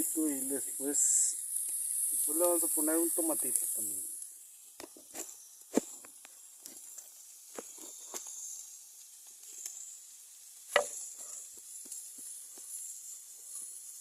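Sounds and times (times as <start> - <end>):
sausage sizzling in pan: 0.0 - 14.0
sharp pops: 4.2 - 9.8, 10.6 - 12.8.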